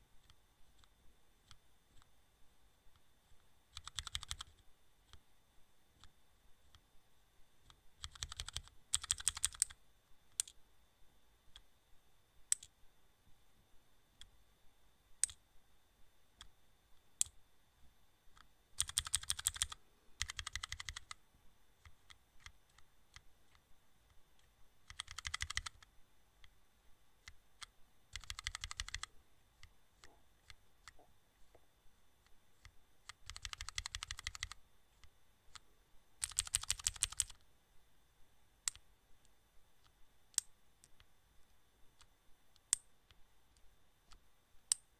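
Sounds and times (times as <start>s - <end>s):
faint high whine: 0.0s - 44.9s.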